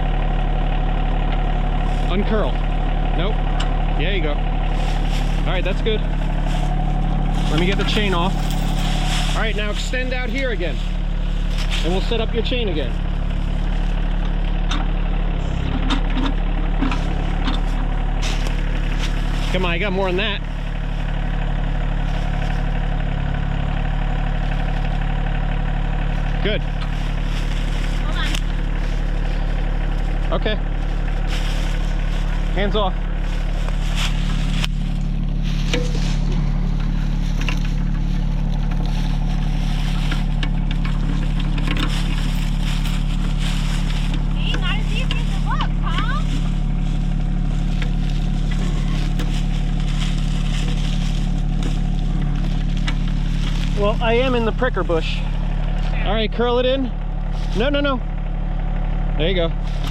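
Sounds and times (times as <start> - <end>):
tractor engine idling: 0.0 - 59.9.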